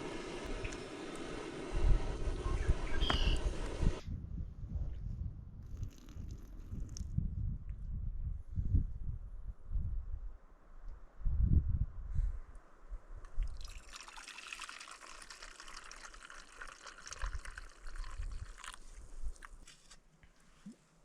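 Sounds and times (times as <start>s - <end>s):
water pouring into container: 5.6s - 7.0s, 13.3s - 19.6s.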